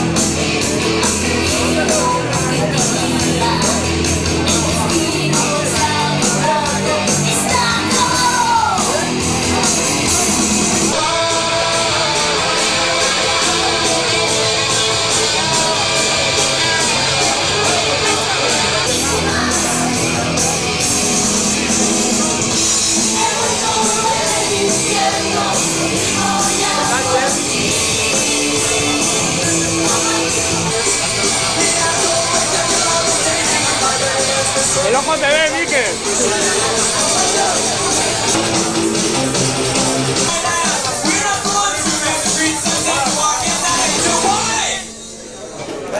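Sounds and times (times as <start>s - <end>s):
person singing: 0.0s - 20.3s, 21.0s - 34.9s, 36.0s - 44.9s
bass guitar: 0.0s - 45.9s
distorted electric guitar: 0.0s - 45.9s
drums with cymbal hits: 0.0s - 45.9s
person shouting and singing: 5.1s - 9.2s.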